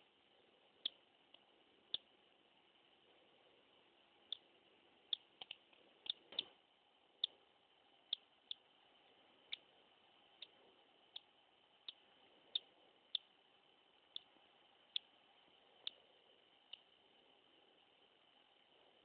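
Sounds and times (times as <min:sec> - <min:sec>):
bird chick peeping: 0:00.6 - 0:02.2, 0:03.8 - 0:13.4, 0:14.0 - 0:17.0.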